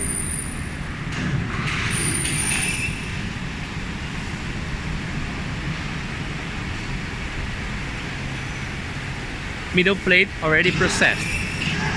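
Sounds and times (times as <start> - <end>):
machinery low rumble: 3.0 - 11.9.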